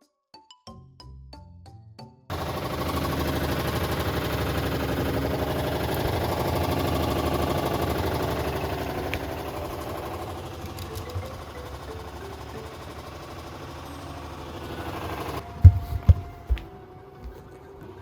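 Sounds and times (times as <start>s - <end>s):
washing machine rattling and knocking: 2.3s - 13.8s, 15.6s - 16.6s.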